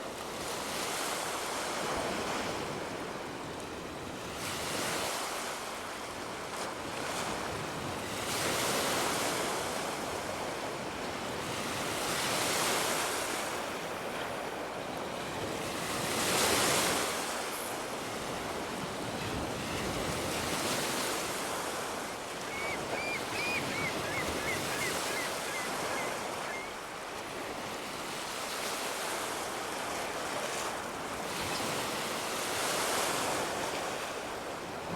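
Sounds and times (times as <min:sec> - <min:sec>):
ocean surf breaking: 0:19.8 - 0:27.8
gull calling: 0:22.4 - 0:26.8.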